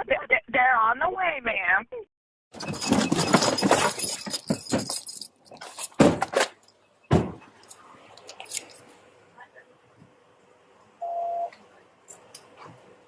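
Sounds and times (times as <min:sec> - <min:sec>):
heavy thumps: 0:05.9 - 0:07.6.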